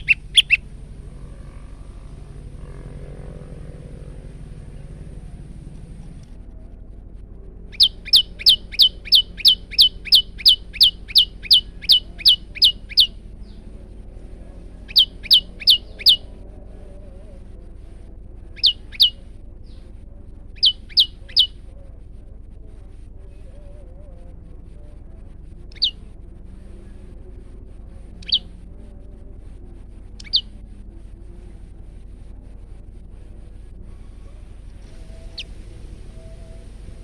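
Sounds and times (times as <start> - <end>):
bird chirping: 0.0 - 0.6, 7.7 - 14.2, 14.8 - 16.4, 18.5 - 19.9, 20.5 - 21.9, 25.7 - 26.0, 28.2 - 28.5, 30.2 - 30.6, 34.8 - 37.0.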